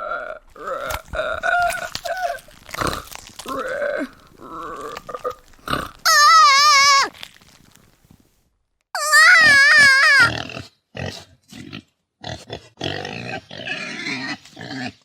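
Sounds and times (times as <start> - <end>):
pig grunting: 0.0 - 7.1
pig squealing: 0.6 - 7.1, 9.0 - 10.4.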